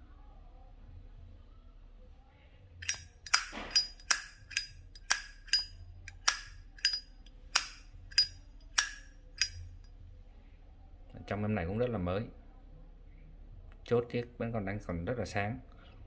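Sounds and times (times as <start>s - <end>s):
lighter lid clinking open and shut: 2.8s - 9.9s.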